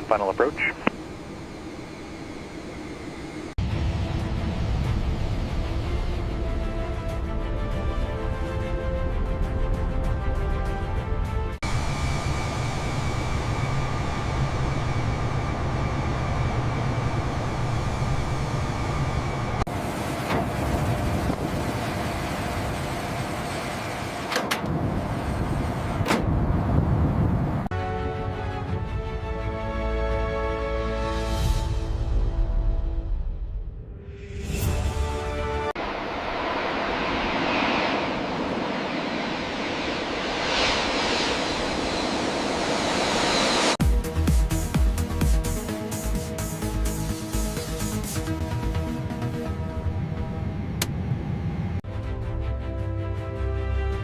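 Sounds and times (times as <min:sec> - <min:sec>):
jet engine rushing: 0:00.0 - 0:07.9, 0:11.6 - 0:27.7, 0:34.4 - 0:51.8.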